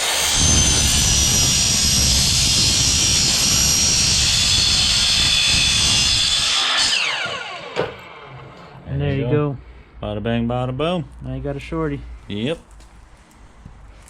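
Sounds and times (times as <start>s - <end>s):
power saw cutting metal pipe: 0.0s - 8.8s.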